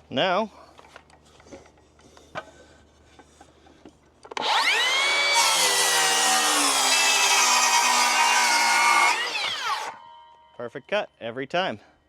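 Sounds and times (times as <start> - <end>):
circular saw cutting wood: 4.4 - 10.1.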